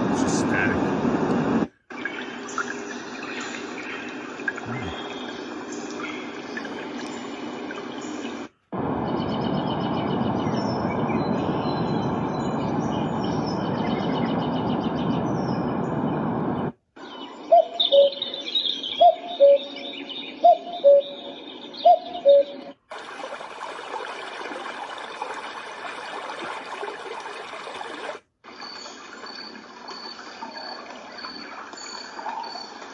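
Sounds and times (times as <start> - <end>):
water-like rushing from speaker: 0.0 - 1.0, 2.0 - 5.3, 22.9 - 31.6.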